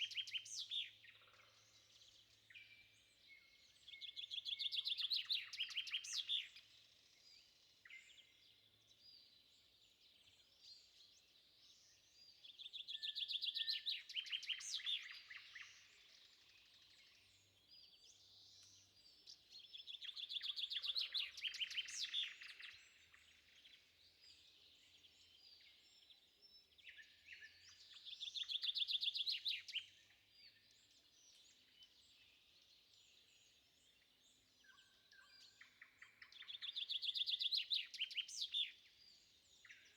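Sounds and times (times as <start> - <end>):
faint bird chirps: 0.0 - 39.9.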